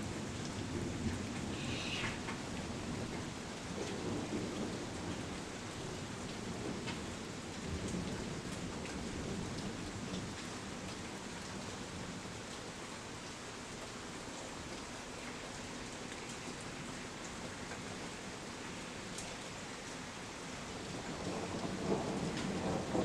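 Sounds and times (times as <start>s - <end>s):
steady rain falling: 0.0s - 23.0s
thunder rumbling: 20.8s - 23.0s.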